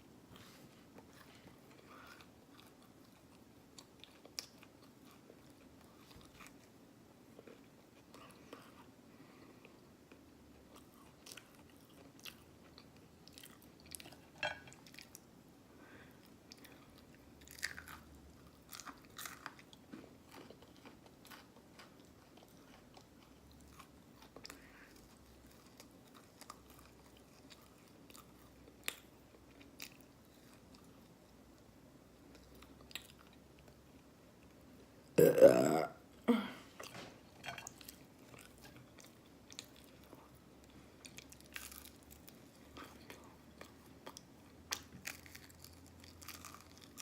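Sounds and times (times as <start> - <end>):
slow chewing: 36.8 - 47.0.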